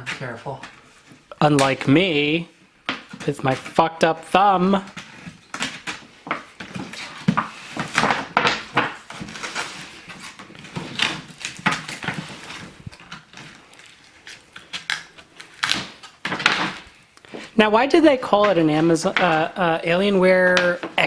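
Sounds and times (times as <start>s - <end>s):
knife cutting packing tape: 4.9s - 16.8s.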